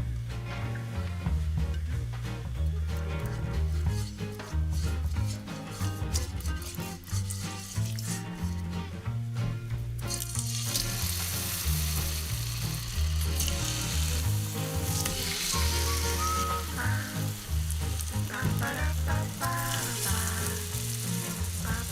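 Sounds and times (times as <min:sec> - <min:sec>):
food sizzling in a pan: 0:03.8 - 0:08.6, 0:10.1 - 0:21.9.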